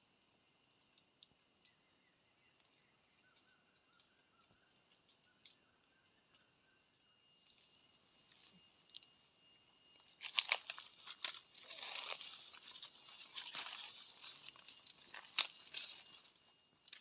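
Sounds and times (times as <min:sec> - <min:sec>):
crickets chirping: 0:00.0 - 0:17.0
leaves crunching underfoot: 0:10.0 - 0:17.0.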